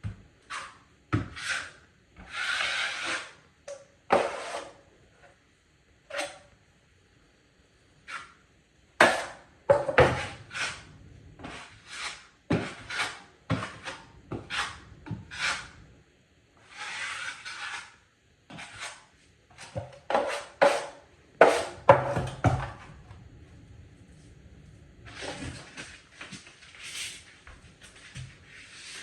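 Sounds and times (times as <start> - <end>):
drywall knife scraping compound: 0.4 - 3.5, 4.1 - 4.9, 6.1 - 6.5, 8.0 - 8.4, 9.0 - 15.9, 16.6 - 22.9, 25.0 - 29.0.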